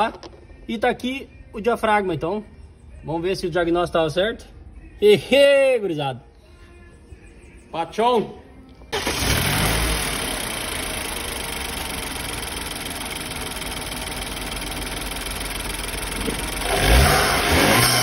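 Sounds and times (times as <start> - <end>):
engine revving: 9.0 - 12.0, 16.0 - 18.0
car engine idling: 9.0 - 18.0.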